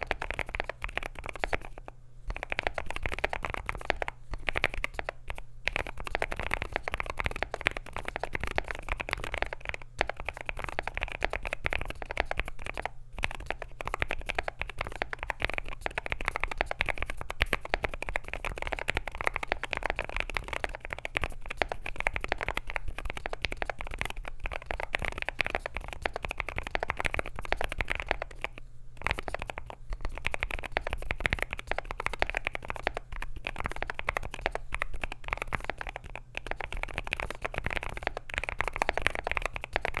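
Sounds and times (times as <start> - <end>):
fast typing on mechanical keyboard: 0.0 - 40.0.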